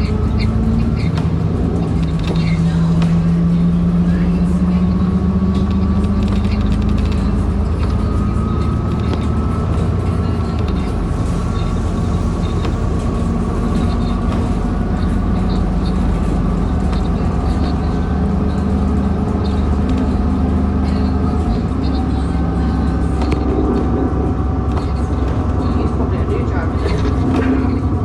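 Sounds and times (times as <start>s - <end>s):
bus engine drone: 0.0s - 28.0s.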